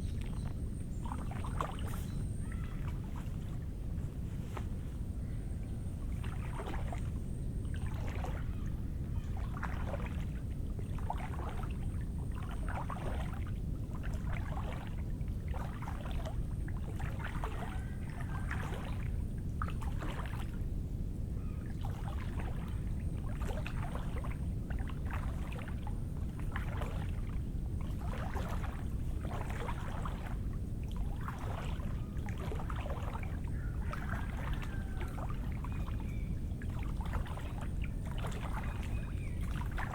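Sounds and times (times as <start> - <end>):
steady low rumble: 0.0 - 34.4
footsteps squelching in mud: 6.1 - 7.2, 26.4 - 30.4, 31.0 - 35.9, 36.6 - 39.9.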